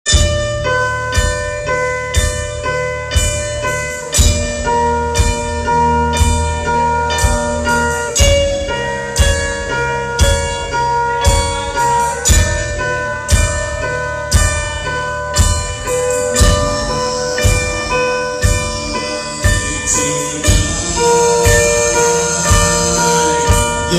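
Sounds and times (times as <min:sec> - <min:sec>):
ringing bell-like tones: 0:00.1 - 0:23.9
deep sustained bass: 0:16.0 - 0:23.9.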